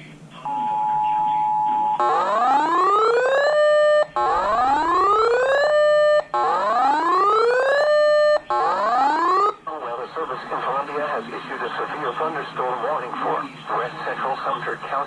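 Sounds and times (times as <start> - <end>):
electronic whoop alert siren: 2.0 - 9.6.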